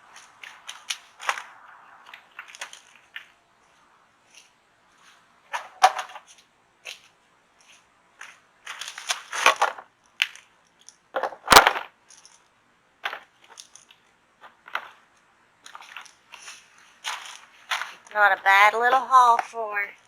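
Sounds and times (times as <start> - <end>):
rustling of sweet potatoes and soil: 0.0 - 20.0.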